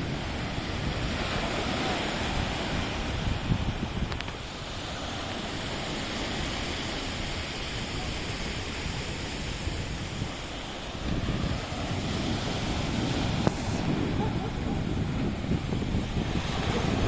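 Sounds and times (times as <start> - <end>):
sea surf washing on shore: 0.0 - 17.0
wind buffeting microphone: 0.0 - 17.0.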